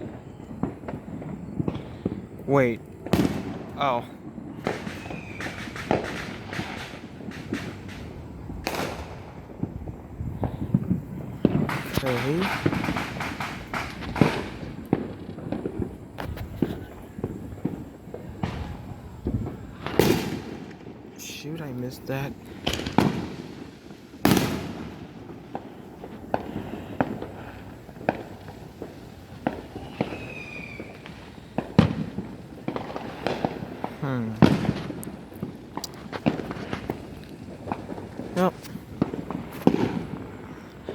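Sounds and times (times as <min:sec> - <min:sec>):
fireworks bangs and pops: 0:00.0 - 0:40.9
falling firework whistle: 0:04.5 - 0:09.7, 0:22.6 - 0:34.9.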